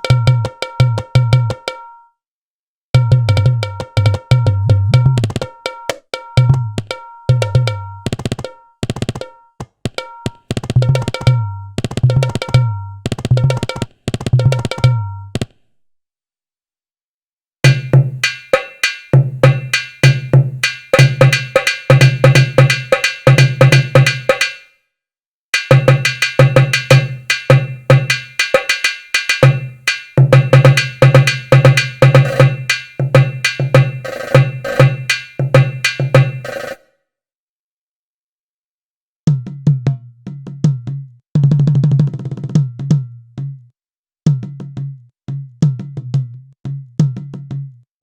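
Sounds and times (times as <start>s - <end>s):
fast pitched drum strokes: 17.7s - 24.6s, 25.6s - 36.8s.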